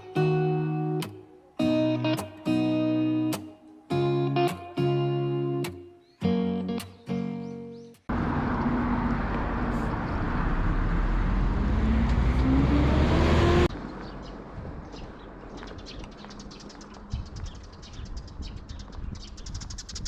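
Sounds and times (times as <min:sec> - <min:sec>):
birds chirping: 0:00.0 - 0:08.1, 0:11.6 - 0:20.0
vehicle engine accelerating: 0:08.1 - 0:14.4.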